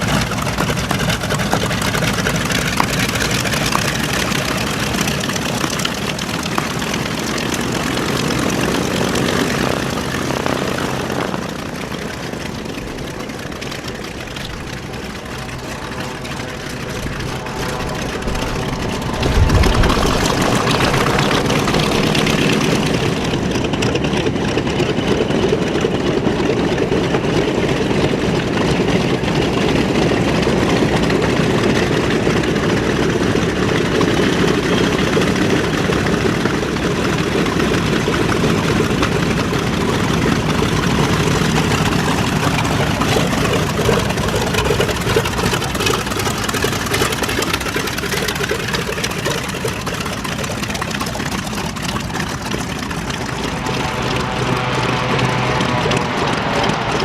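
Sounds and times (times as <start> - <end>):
radial aircraft engines running: 0.0 - 57.0.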